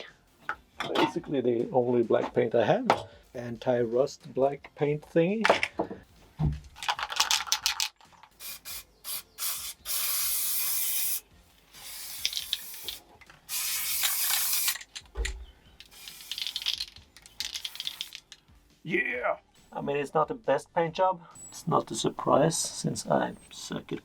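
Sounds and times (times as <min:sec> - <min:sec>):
aerosol can spraying: 0:08.3 - 0:14.9, 0:15.8 - 0:18.4.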